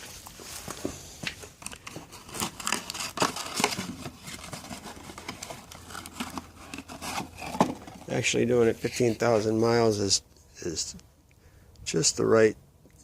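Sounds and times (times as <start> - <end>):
clicks and crinkling rustling: 0.0 - 9.6.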